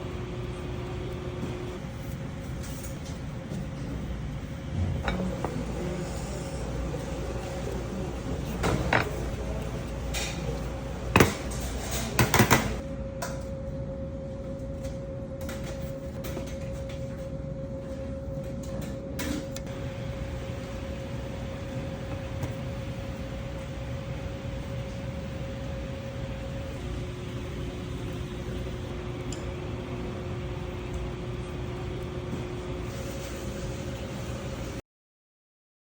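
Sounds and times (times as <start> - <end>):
mechanical hum: 0.0 - 34.8
faint steady hum: 16.5 - 33.2.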